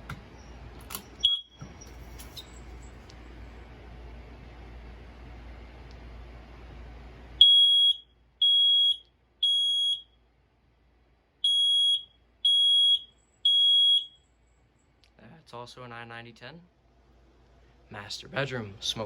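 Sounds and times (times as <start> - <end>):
high-pitched smoke alarm beeps: 0.4 - 2.6, 7.4 - 10.2, 11.4 - 14.4.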